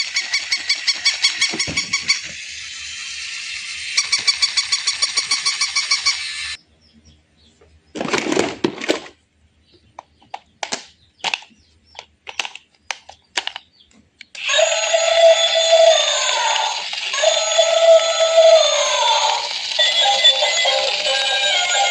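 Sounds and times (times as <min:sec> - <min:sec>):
electronic toy melody: 0:03.6 - 0:06.4, 0:14.4 - 0:21.9
sharp clicks: 0:10.0 - 0:14.7
rapid electronic beeping: 0:19.6 - 0:21.9.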